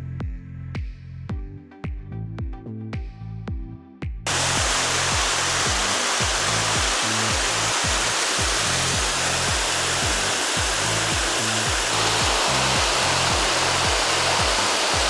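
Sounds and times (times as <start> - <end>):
music with bass beat: 0.0 - 15.0
waterfall rushing: 4.3 - 15.0.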